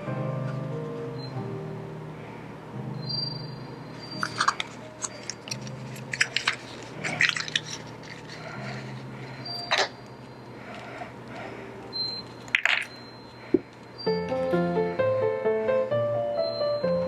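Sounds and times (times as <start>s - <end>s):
faint low hum: 0.0s - 14.8s
packets crinkling and clicking: 4.2s - 10.0s, 12.2s - 13.9s.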